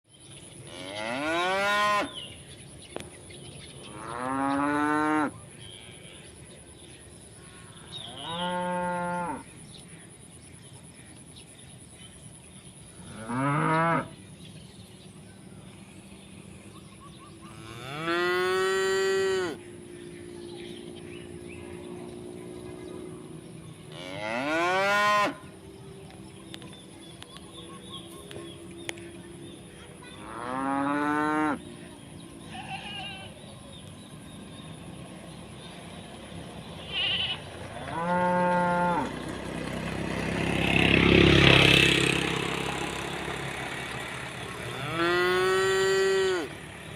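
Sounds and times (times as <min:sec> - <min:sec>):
cattle mooing: 0:17.5 - 0:19.6, 0:23.9 - 0:25.4, 0:36.9 - 0:39.1, 0:44.7 - 0:46.5.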